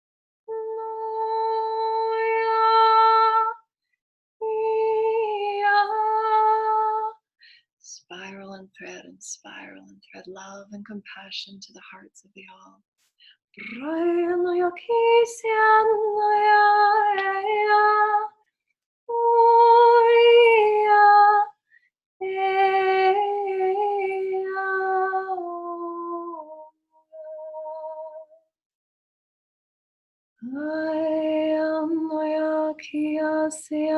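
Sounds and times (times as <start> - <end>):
woman singing unaccompanied: 0.5 - 3.6, 4.4 - 7.2, 13.6 - 18.4, 19.1 - 21.5, 22.2 - 28.2, 30.4 - 33.9.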